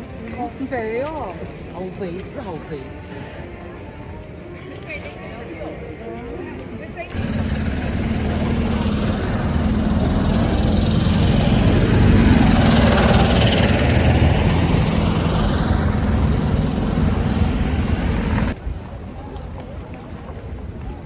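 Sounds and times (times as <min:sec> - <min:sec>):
motor engine humming: 0:07.2 - 0:18.6.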